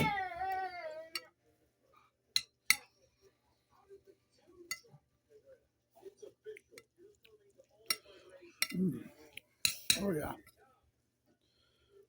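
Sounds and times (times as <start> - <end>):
metal spoon clinking on plate: 9.6 - 10.1.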